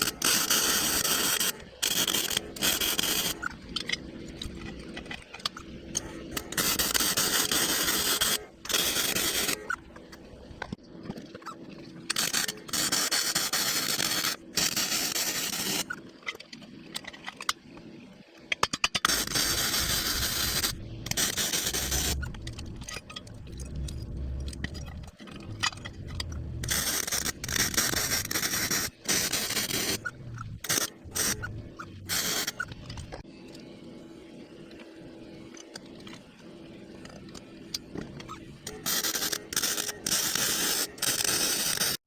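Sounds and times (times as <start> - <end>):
metal parts scraping and knocking: 18.6 - 33.2.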